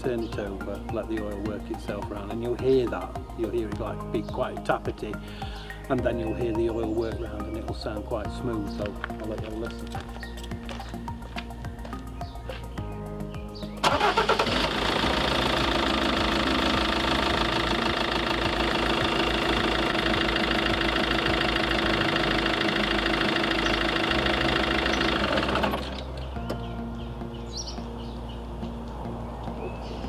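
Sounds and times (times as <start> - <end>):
diesel engine starting and idling: 13.8 - 26.8.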